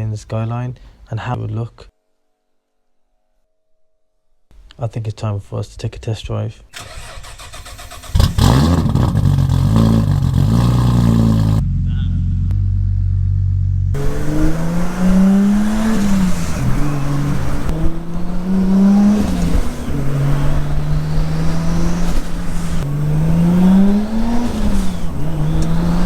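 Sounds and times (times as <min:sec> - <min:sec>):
car engine pulling through gears: 0:06.8 - 0:26.0.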